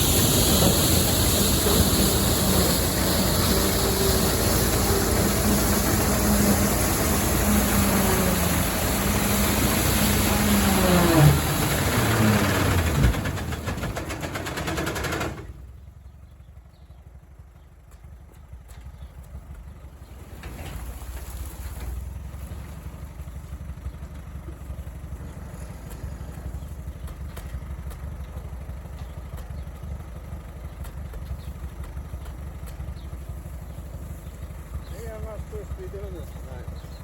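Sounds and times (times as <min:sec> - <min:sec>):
low engine rumble: 0:00.0 - 0:37.0
tractor and combine running: 0:00.0 - 0:37.0.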